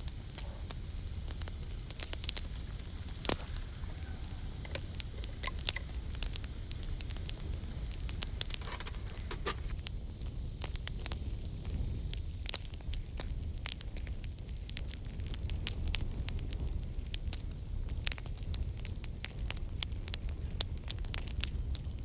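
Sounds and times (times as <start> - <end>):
fire crackling: 0.0 - 22.0
sharp pops: 0.3 - 9.8.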